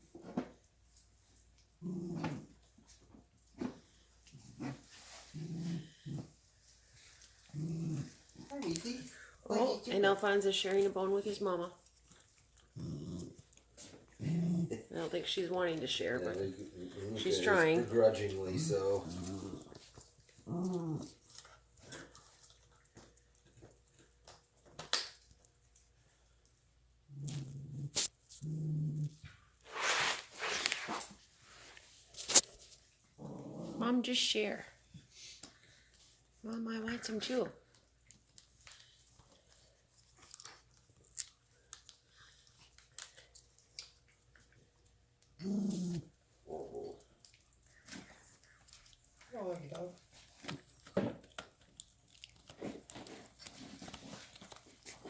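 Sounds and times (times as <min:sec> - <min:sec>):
puppies gnawing on a bone: 0:05.8 - 0:26.6, 0:36.8 - 0:55.0
dog chewing on bone: 0:46.8 - 0:55.0.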